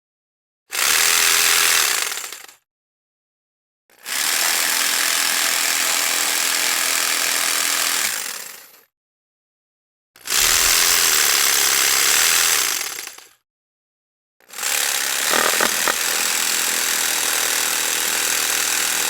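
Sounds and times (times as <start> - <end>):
jigsaw running: 15.1 - 16.4
sharp rattles: 15.2 - 16.3.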